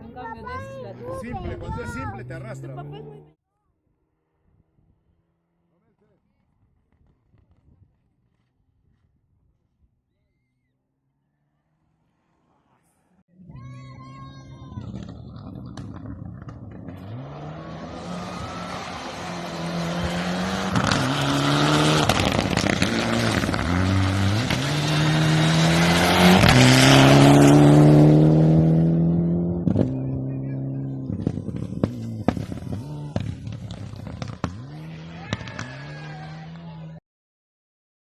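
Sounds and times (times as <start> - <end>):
rally car engine at full throttle: 0.1 - 3.4, 12.1 - 37.0.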